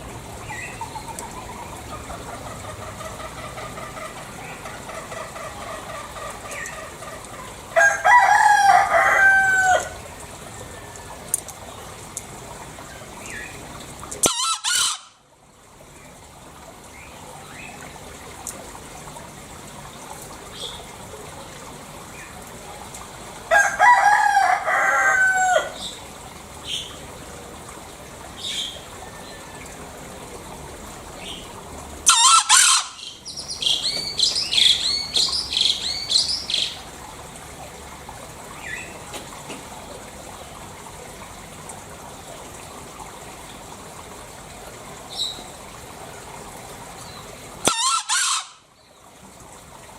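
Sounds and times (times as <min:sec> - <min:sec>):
junglefowl crowing: 0:01.0 - 0:10.0, 0:14.2 - 0:15.2, 0:23.5 - 0:25.8, 0:32.0 - 0:36.8, 0:47.6 - 0:48.7
sharp high-pitched bird calls: 0:14.2 - 0:15.1, 0:32.1 - 0:36.8, 0:47.6 - 0:48.6
high chirping: 0:33.0 - 0:36.8.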